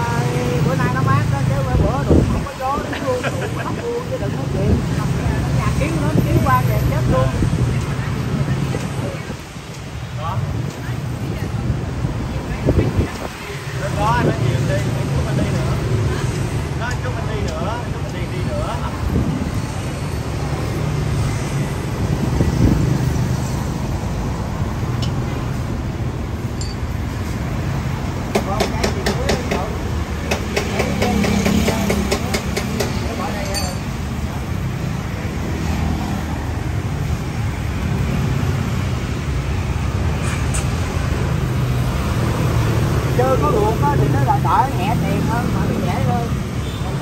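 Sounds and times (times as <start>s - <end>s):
motorbike engines passing: 0.0s - 47.0s
street traffic rumble: 0.0s - 47.0s.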